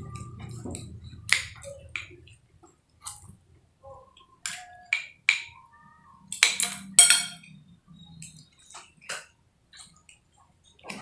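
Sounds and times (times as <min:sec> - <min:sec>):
cutlery clinking against plate: 0:06.3 - 0:10.0
cutlery scraping plate: 0:06.4 - 0:09.3.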